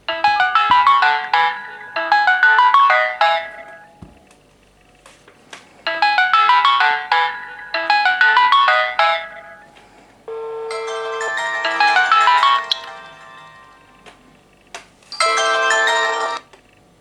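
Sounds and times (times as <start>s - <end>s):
phone ringtone melody: 0.0s - 4.2s, 5.9s - 9.8s, 10.6s - 14.0s, 15.2s - 16.4s.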